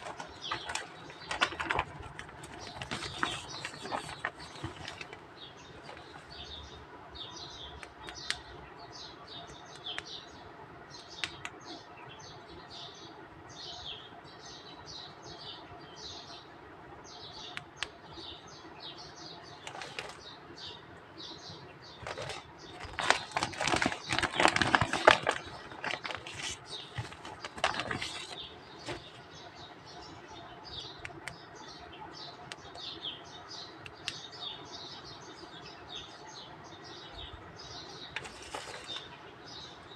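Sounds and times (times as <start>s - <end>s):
plastic pack crackling: 0.0s - 6.3s, 19.6s - 20.3s, 22.0s - 29.2s, 38.2s - 39.1s
small birds chirping: 0.0s - 39.9s.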